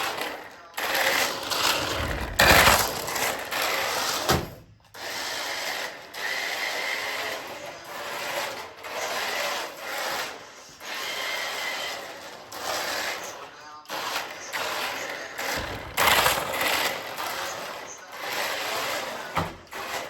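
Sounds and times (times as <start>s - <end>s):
tyres scrubbing across ground: 1.2s - 4.2s, 15.2s - 17.5s
small electric motor whining: 14.1s - 19.1s.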